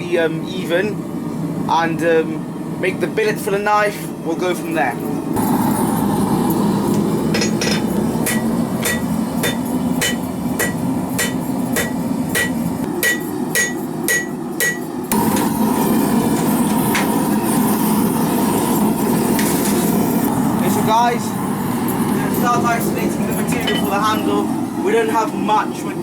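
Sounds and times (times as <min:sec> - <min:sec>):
forge burner rushing: 0:00.0 - 0:26.0
hammer ringing on anvil: 0:07.4 - 0:15.5, 0:23.5 - 0:24.2.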